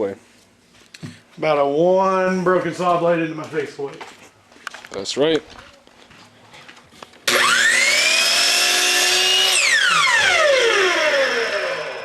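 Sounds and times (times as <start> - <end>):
electric power saw motor whine: 7.2 - 12.0.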